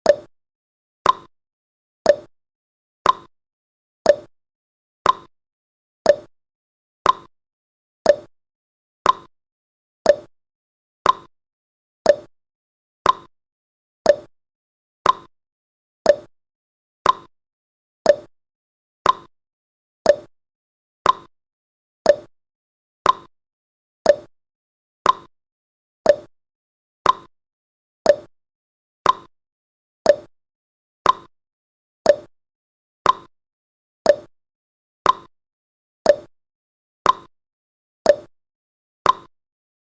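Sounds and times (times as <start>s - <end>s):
timer ticking: 0.0s - 0.3s, 1.0s - 1.3s, 2.1s - 2.3s, 3.0s - 3.3s, 4.1s - 4.3s, 5.0s - 5.3s, 6.1s - 6.3s, 7.0s - 7.3s, 8.0s - 8.3s, 9.0s - 9.3s, 10.0s - 10.3s, 11.0s - 11.3s, 12.0s - 12.3s, 13.0s - 13.3s, 14.1s - 14.3s, 15.0s - 15.3s, 16.1s - 16.3s, 17.0s - 17.3s, 18.1s - 18.3s, 19.0s - 19.3s, 20.1s - 20.3s, 21.0s - 21.3s, 22.1s - 22.3s, 23.0s - 23.3s, 24.0s - 24.3s, 25.0s - 25.3s, 26.0s - 26.3s, 27.0s - 27.3s, 28.1s - 28.3s, 29.0s - 29.3s, 30.1s - 30.3s, 31.0s - 31.3s, 32.1s - 32.3s, 33.1s - 33.3s, 34.1s - 34.3s, 35.1s - 35.3s, 36.1s - 36.3s, 37.1s - 37.3s, 38.1s - 38.3s, 39.1s - 39.3s.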